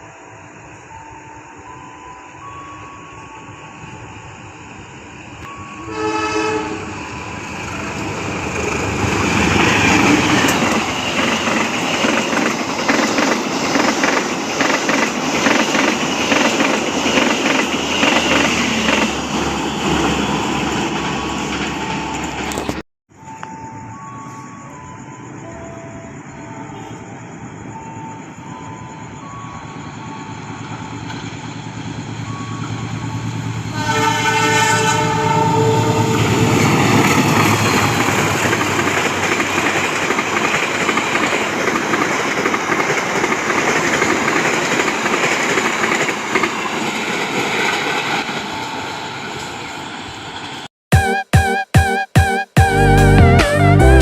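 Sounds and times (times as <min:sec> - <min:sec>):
train horn: 0:05.8 - 0:13.9, 0:33.7 - 0:38.8
train wheels clattering over rails: 0:07.2 - 0:22.8, 0:36.2 - 0:49.6.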